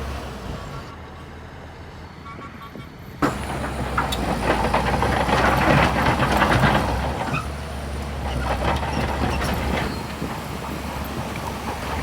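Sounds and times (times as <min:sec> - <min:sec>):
diesel machinery droning: 0:03.2 - 0:12.0.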